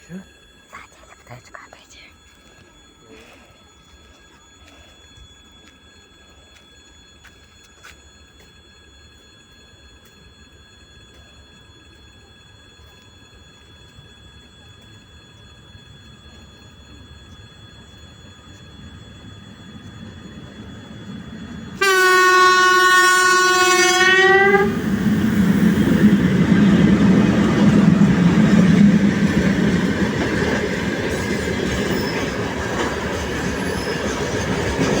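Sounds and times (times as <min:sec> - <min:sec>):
train rumbling on rails: 0:09.1 - 0:35.0
train horn: 0:21.7 - 0:25.1.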